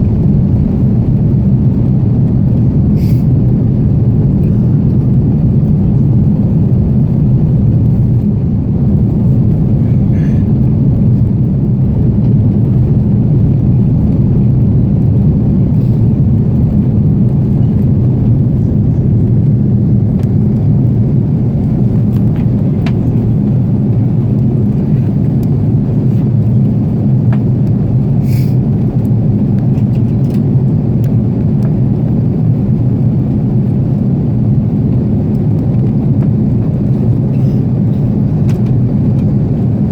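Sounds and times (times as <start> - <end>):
airplane cabin engine rumble: 0.0 - 39.9.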